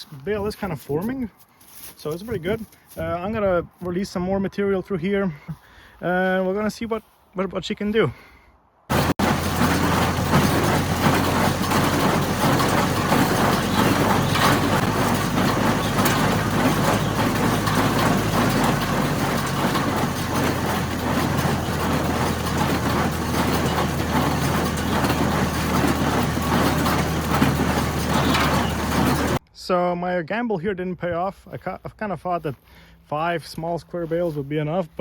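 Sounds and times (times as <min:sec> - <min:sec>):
baler mechanism clattering: 0:08.9 - 0:29.4
tractor engine running: 0:08.9 - 0:29.4.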